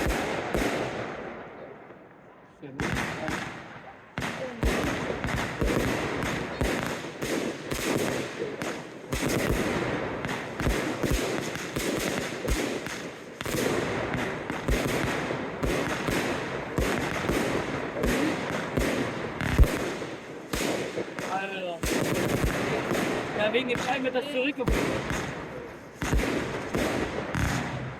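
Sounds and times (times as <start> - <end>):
fireworks crackling: 0.0 - 1.2, 2.8 - 27.9
firework shells bursting: 2.8 - 27.9.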